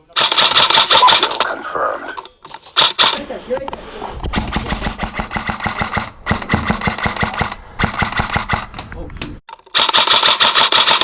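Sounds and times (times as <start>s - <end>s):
airsoft rifle firing full-auto: 4.4s - 8.8s, 9.7s - 11.0s
harsh high-pitched rattle: 4.4s - 8.8s.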